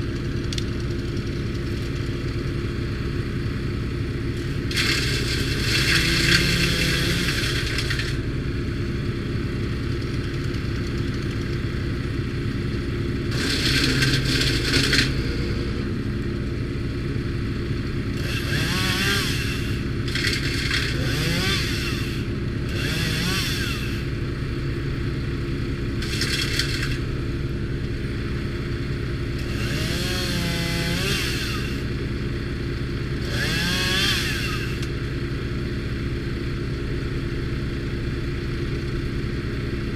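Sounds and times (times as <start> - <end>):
wood chipper engine running: 0.0 - 39.9
branches chipped rasping crackling: 4.4 - 8.2, 20.0 - 21.2, 26.0 - 27.2.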